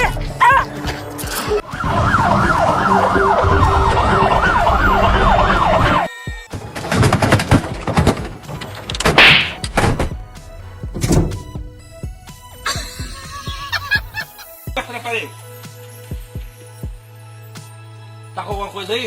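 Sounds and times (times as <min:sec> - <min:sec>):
siren yelping: 0:01.8 - 0:06.1
clicks and knocks: 0:07.6 - 0:14.4.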